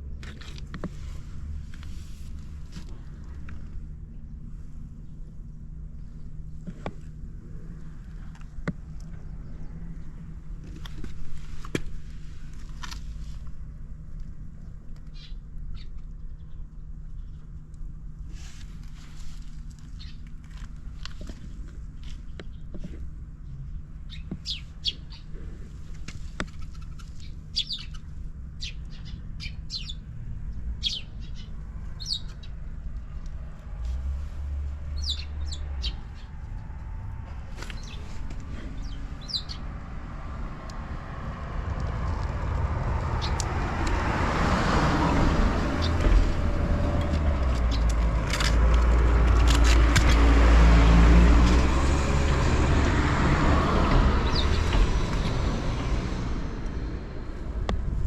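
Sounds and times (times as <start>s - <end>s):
birds chirping: 19.9s - 20.3s, 23.6s - 25.6s, 26.4s - 32.6s, 34.8s - 40.3s, 43.0s - 43.6s, 44.8s - 48.0s, 50.3s - 57.5s.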